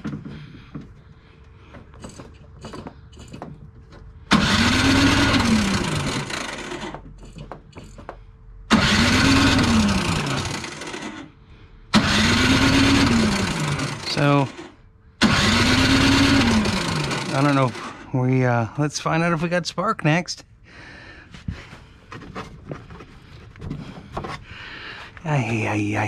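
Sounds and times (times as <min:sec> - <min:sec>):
tools clicking: 0:02.0 - 0:04.0
snowblower engine cranking: 0:04.2 - 0:08.0, 0:08.7 - 0:11.3, 0:11.9 - 0:18.2.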